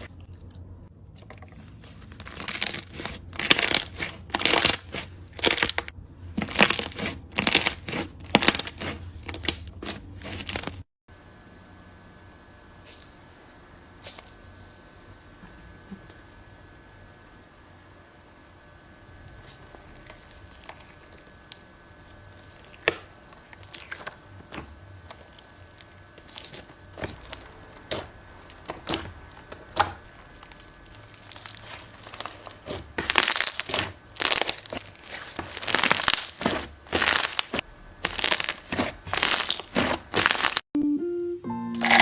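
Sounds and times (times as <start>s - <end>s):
crinkling crushing bursts: 1.1s - 10.9s, 30.3s - 40.6s.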